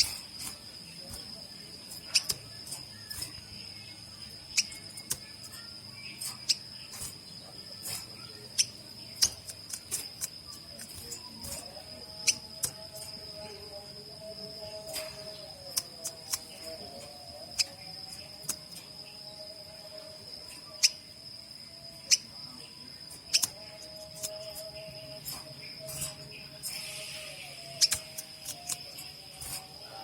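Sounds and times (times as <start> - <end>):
cricket trilling: 0.0 - 30.0
finches chip calls: 23.0 - 29.6.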